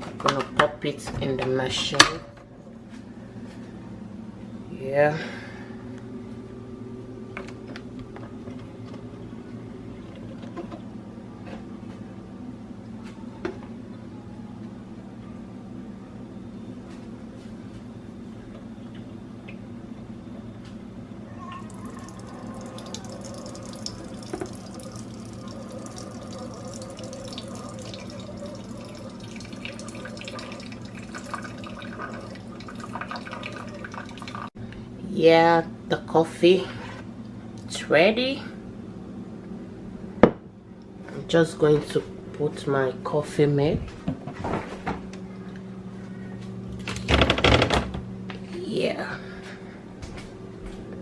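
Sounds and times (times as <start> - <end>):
coffee machine pump hum: 0.0 - 37.7.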